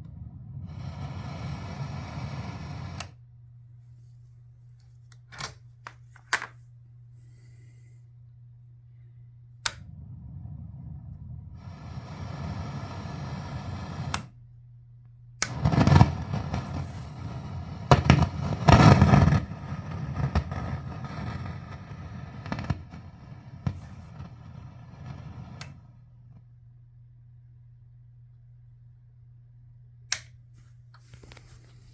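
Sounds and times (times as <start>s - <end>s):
amplifier pops and crackling: 15.4s - 24.4s.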